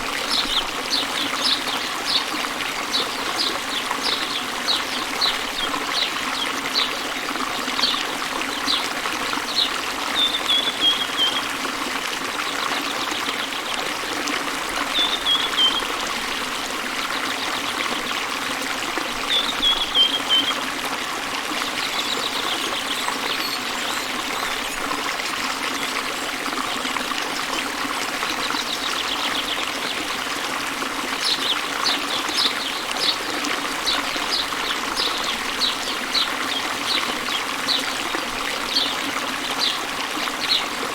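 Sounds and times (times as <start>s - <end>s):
water trickling: 0.0s - 40.9s
small birds calling: 0.2s - 7.1s, 7.8s - 11.6s, 14.8s - 16.0s, 19.3s - 20.6s, 31.1s - 40.9s.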